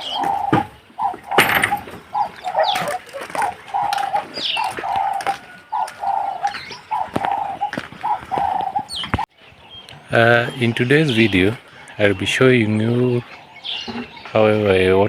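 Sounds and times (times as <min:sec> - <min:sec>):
dove cooing: 0:00.0 - 0:09.3
small birds chirping: 0:00.0 - 0:15.0.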